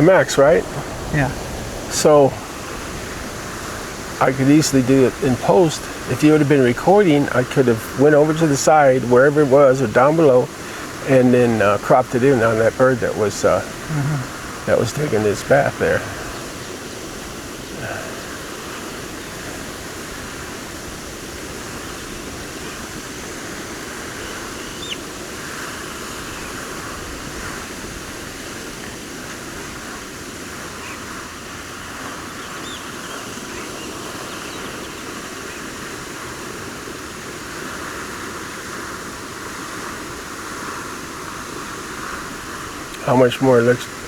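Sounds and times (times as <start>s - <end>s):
rushing hiss: 0.0s - 44.0s
faint bird chirps: 24.1s - 25.0s, 32.3s - 35.7s.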